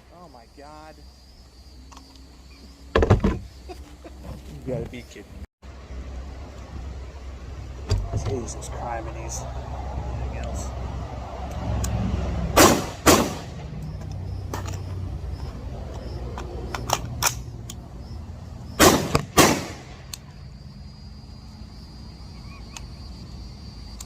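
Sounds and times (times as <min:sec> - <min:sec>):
steady low rumble: 0:05.2 - 0:24.0
rifle shots: 0:12.6 - 0:13.6, 0:18.8 - 0:20.0
fainter sharp cracks: 0:18.8 - 0:20.2.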